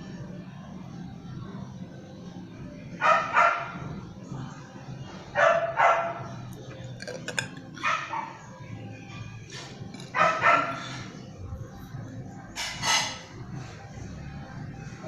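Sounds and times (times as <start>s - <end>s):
dog barking: 3.0s - 3.8s, 5.4s - 6.3s, 7.8s - 8.4s, 10.1s - 11.0s.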